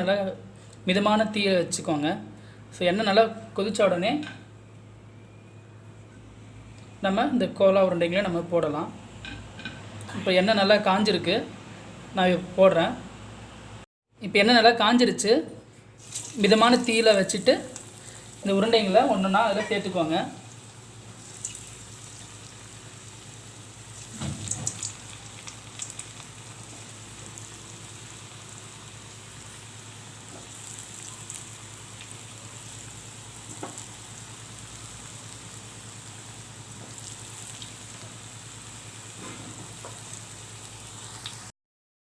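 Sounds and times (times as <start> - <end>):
deep-frying in hot oil: 16.0 - 41.6.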